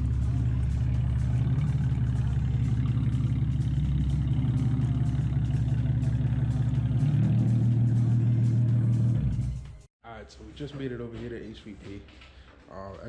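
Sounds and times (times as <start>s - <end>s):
car engine droning: 0.0s - 9.9s.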